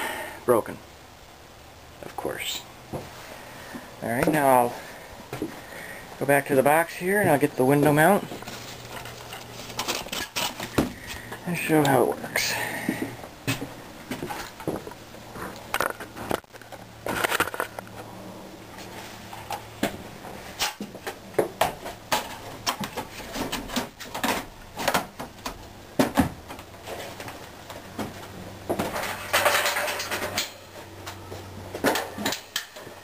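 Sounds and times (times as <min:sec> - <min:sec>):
cardboard rustling: 0:08.2 - 0:11.2
knocks and clatter: 0:20.6 - 0:33.0.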